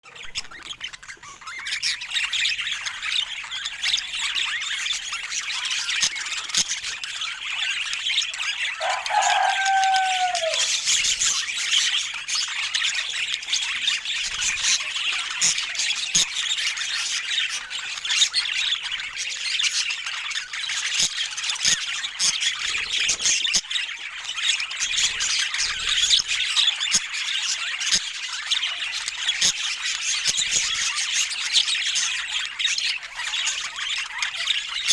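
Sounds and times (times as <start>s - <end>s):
budgerigars chattering and squawking: 0.1s - 34.9s
low sliding bird call: 8.8s - 10.9s.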